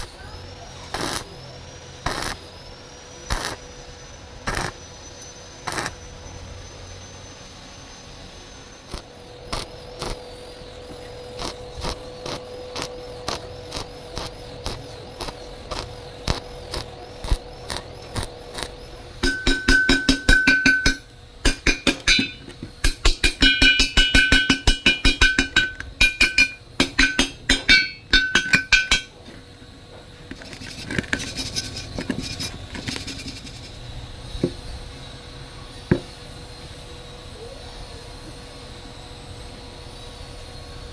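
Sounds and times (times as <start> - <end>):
hammer striking steel: 18.6 - 29.2.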